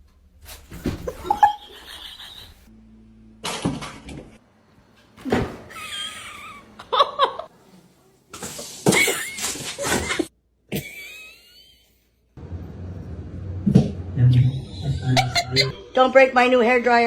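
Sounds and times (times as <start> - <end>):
person laughing: 1.0 - 2.7, 5.7 - 7.5, 14.3 - 16.0.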